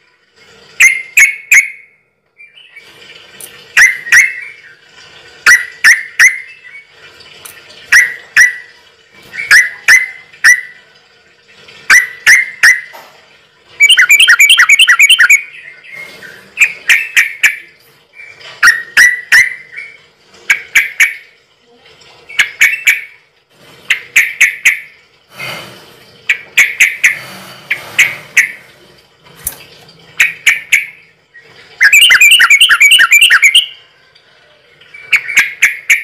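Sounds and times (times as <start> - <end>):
bird chirping and trilling: 0.8 - 2.9, 3.8 - 4.8, 5.5 - 6.9, 7.9 - 8.7, 9.3 - 10.8, 11.9 - 12.9, 13.8 - 21.3, 22.3 - 23.2, 26.3 - 28.7, 30.2 - 33.9, 34.8 - 36.0.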